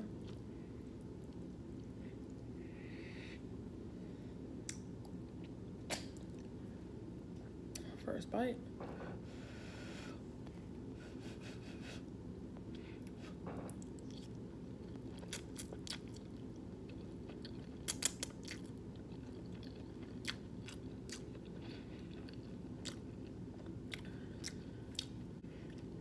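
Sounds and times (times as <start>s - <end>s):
steady low hum: 0.0s - 26.0s
close-mic chewing: 0.2s - 2.6s, 12.6s - 26.0s
wet mouth clicks and smacks: 5.9s - 6.3s, 17.9s - 18.3s.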